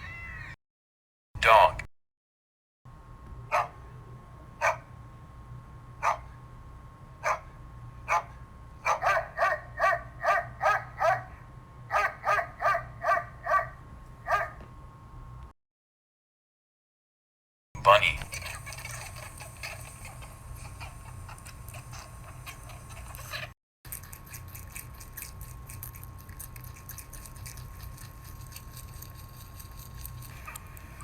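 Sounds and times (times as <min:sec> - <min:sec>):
dog barking: 0:03.5 - 0:03.8, 0:04.6 - 0:04.9, 0:06.0 - 0:06.3, 0:07.2 - 0:07.5, 0:08.1 - 0:14.6
steady hum: 0:17.8 - 0:31.0.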